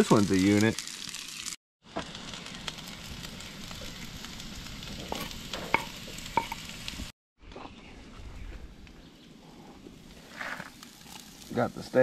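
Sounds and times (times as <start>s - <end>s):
food sizzling in a pan: 0.0s - 7.1s, 10.0s - 12.0s.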